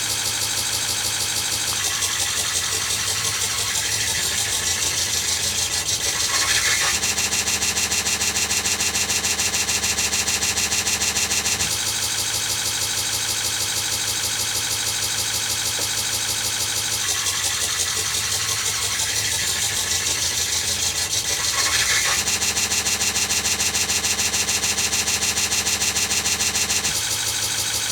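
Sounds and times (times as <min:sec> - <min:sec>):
harsh pulsing buzz: 0:17.1 - 0:27.1.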